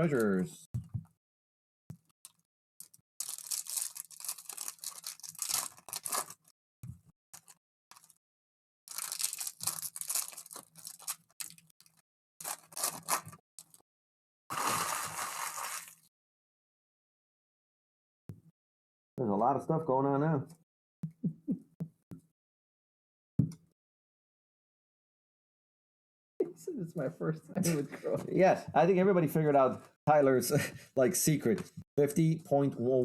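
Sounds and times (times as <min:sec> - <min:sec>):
plastic wrapping crinkling: 0:03.2 - 0:06.5, 0:07.4 - 0:08.2, 0:08.9 - 0:13.8, 0:14.5 - 0:16.1.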